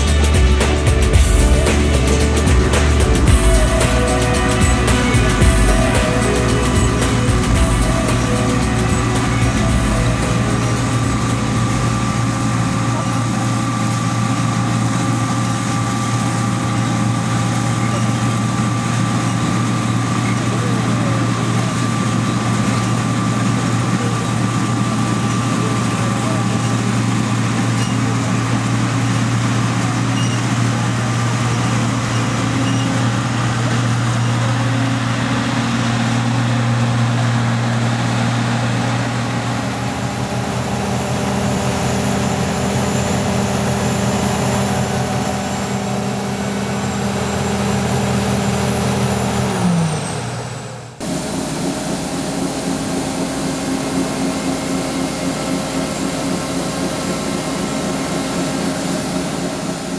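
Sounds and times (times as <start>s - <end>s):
combine harvester engine droning: 0.0s - 59.9s.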